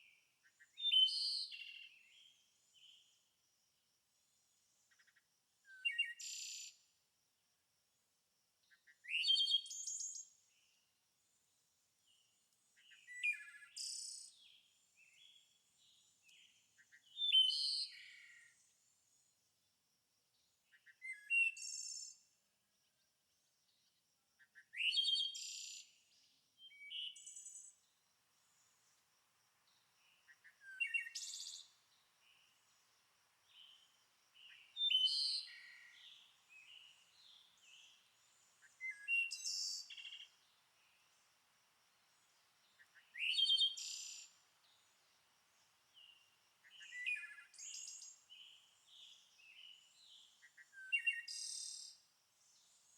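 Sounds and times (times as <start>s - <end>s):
songbird singing: 0.0s - 3.4s, 4.2s - 7.0s, 8.6s - 19.3s, 20.3s - 23.1s, 23.7s - 52.9s
soft bird chirps: 4.5s - 6.9s, 12.0s - 18.9s, 20.7s - 22.3s, 24.4s - 52.9s.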